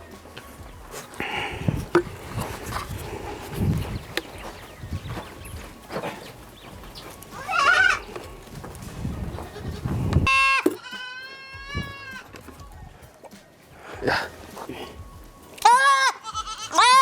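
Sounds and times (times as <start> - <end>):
goat kids bleating: 0.8 - 12.4, 15.6 - 17.0.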